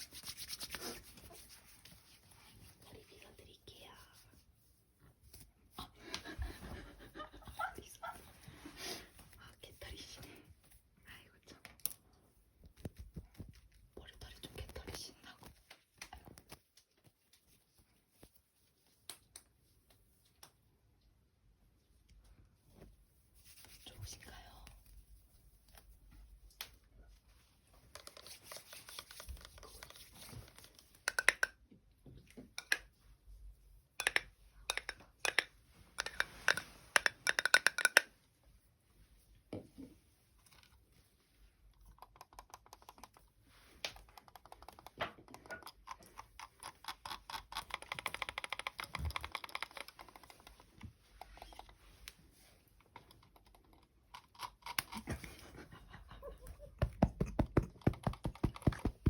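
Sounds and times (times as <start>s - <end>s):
sharp tapping and clicking: 56.8s - 59.0s.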